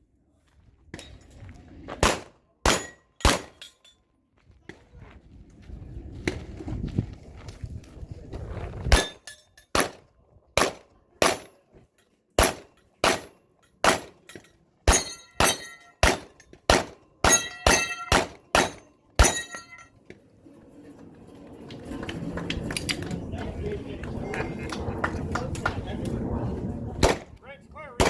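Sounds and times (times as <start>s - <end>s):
pistol shots: 2.0s - 3.6s, 8.9s - 10.0s, 10.6s - 11.5s, 12.4s - 14.2s, 14.9s - 19.5s, 27.0s - 27.3s
metallic ring: 13.6s - 16.0s, 17.2s - 20.0s.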